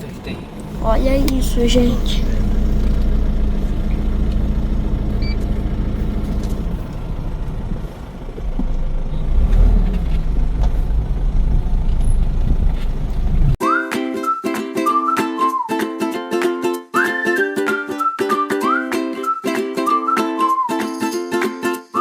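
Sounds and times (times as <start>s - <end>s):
engine hum: 0.0s - 13.6s
vehicle engine and road rumble: 0.0s - 13.6s.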